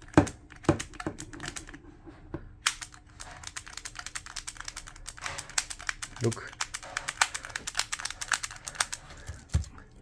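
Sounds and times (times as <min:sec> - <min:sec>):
plastic magazine teeth clicking: 0:02.6 - 0:09.7.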